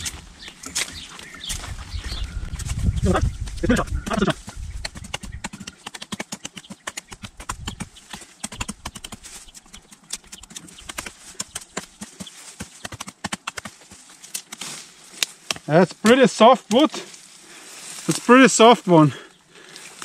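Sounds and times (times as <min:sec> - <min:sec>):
knife chopping into wood: 0:03.7 - 0:14.7.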